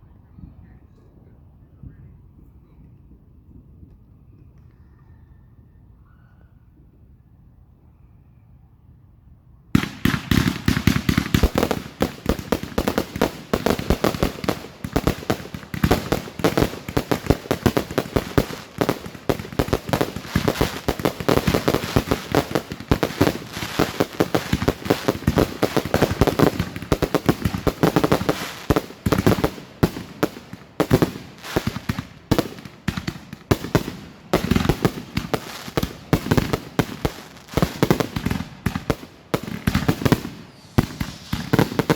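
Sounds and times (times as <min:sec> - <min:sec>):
fireworks bangs and crackles: 0:09.7 - 0:41.9.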